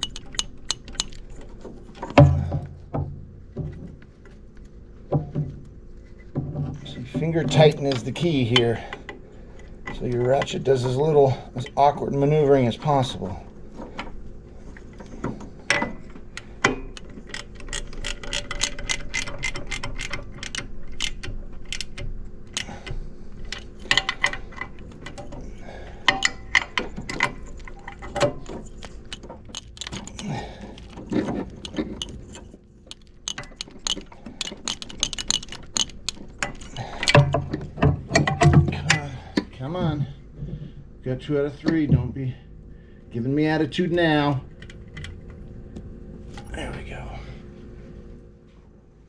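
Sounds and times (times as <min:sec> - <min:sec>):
hand ratchet clicking: 0:00.0 - 0:01.4, 0:16.6 - 0:25.2, 0:26.0 - 0:37.6.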